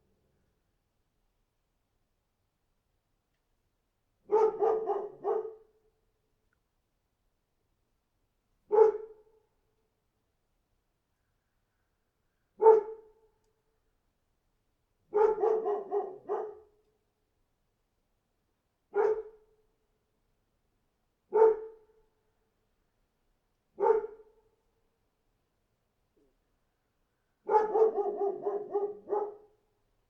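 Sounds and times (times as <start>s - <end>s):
dog barking: 4.3s - 5.7s, 8.7s - 9.2s, 12.6s - 13.2s, 15.1s - 16.8s, 18.9s - 19.4s, 21.3s - 21.9s, 23.8s - 24.3s, 27.4s - 29.6s.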